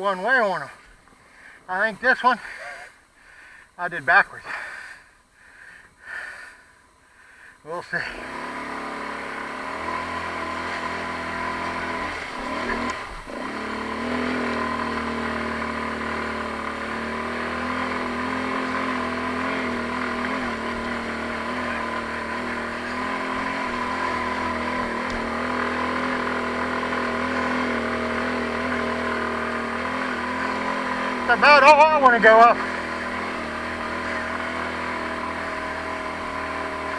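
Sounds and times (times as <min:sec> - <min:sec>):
atv engine revving: 0:07.8 - 0:36.9.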